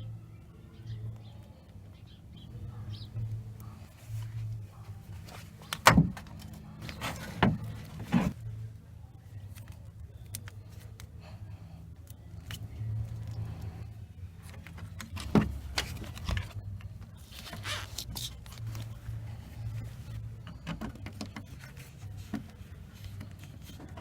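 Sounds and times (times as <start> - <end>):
steady low hum: 0.0 - 24.0
scraping rustle: 6.8 - 8.4.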